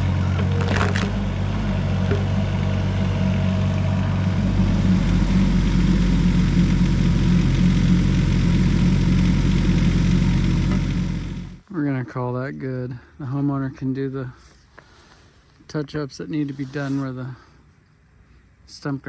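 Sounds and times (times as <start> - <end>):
stump grinder engine running: 0.0 - 11.6.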